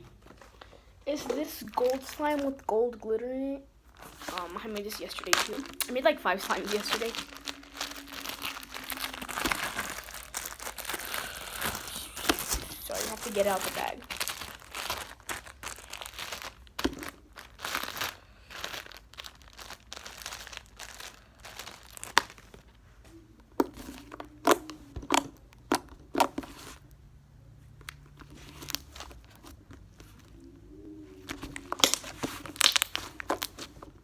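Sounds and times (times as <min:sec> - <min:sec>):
plastic bag crinkling: 0:00.0 - 0:02.9, 0:03.9 - 0:22.8, 0:27.9 - 0:30.3, 0:31.2 - 0:34.0.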